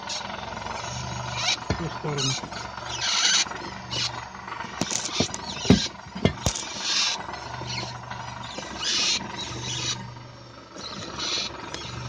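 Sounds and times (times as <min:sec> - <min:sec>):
car suspension squeaking: 0:00.0 - 0:12.0
dull knocks: 0:05.0 - 0:06.6.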